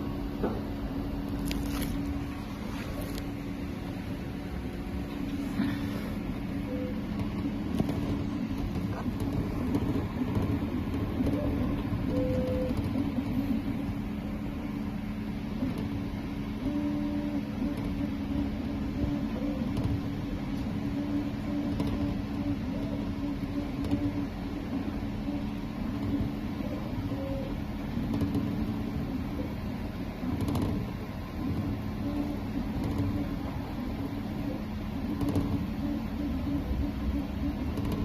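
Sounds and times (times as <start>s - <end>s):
printer machine hum: 0.0s - 38.0s
stepper motors whining: 1.4s - 30.4s.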